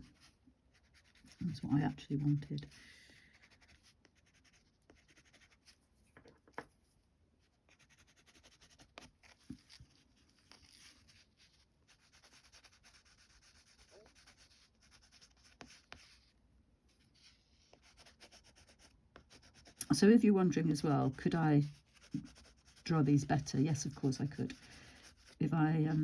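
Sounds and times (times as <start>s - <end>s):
crayon scratching on rough paper: 0.0s - 5.8s, 7.7s - 16.3s, 17.1s - 26.0s.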